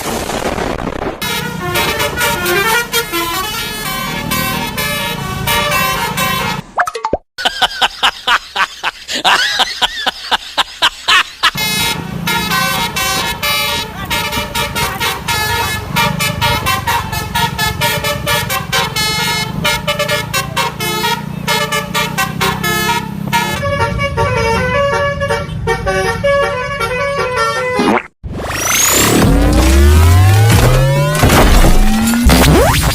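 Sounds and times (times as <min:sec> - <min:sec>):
multi-tone bus horn tune: 0:01.2 - 0:06.7, 0:11.5 - 0:27.8.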